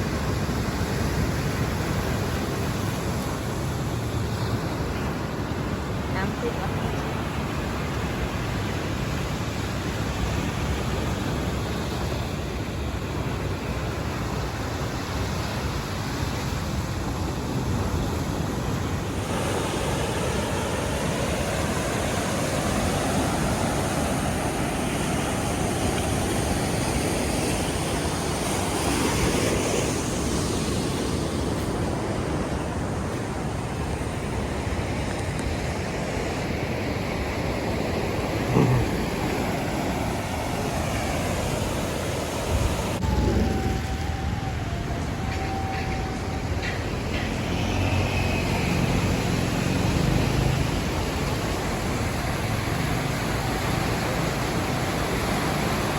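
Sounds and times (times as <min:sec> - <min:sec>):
sea surf washing: 0:00.0 - 0:55.9
wind buffeting microphone: 0:16.2 - 0:55.9.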